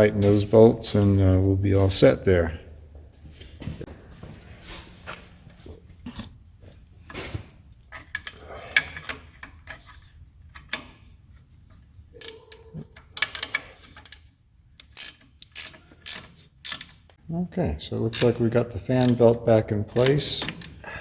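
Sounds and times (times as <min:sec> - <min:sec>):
socket ratchet clicking: 0:12.2 - 0:17.2, 0:19.0 - 0:19.2, 0:20.0 - 0:20.8.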